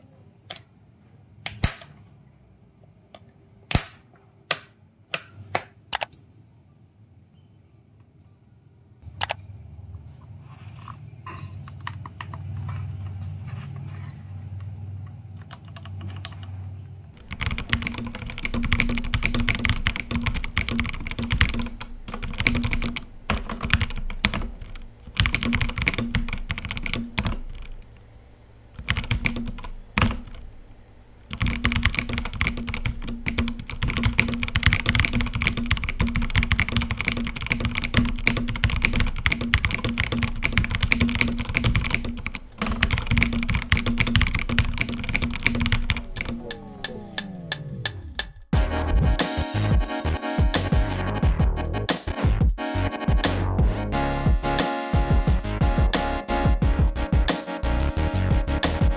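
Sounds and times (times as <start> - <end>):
typing on mechanical keyboard: 15.4 - 16.5, 17.2 - 27.7, 28.8 - 30.4, 31.3 - 47.0.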